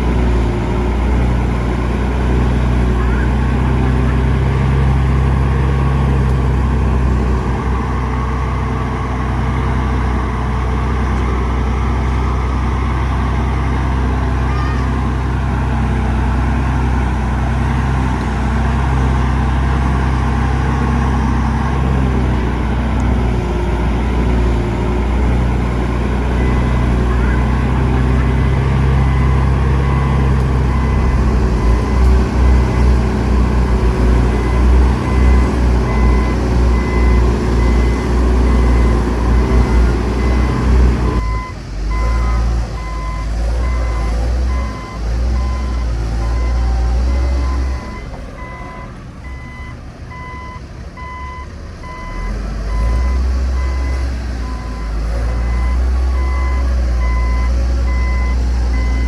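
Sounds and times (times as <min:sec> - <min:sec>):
heavy diesel engine rumble: 0:00.0 - 0:59.0
reversing alarm beeping: 0:26.4 - 0:59.0.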